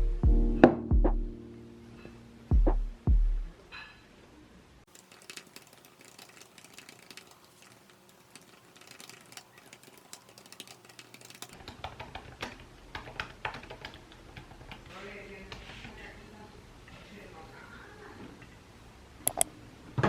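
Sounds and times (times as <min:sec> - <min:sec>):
computer keyboard typing: 0:04.9 - 0:14.9.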